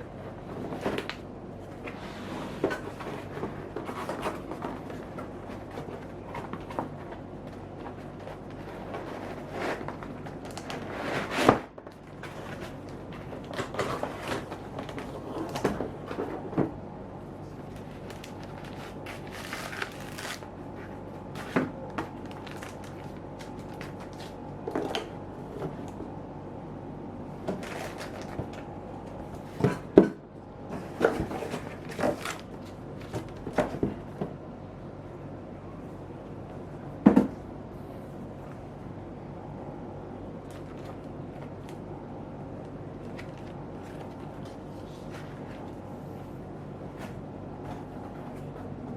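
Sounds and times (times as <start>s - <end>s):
steady low hum: 0.0s - 48.9s
laptop packaging handled: 17.6s - 24.4s, 27.5s - 28.6s.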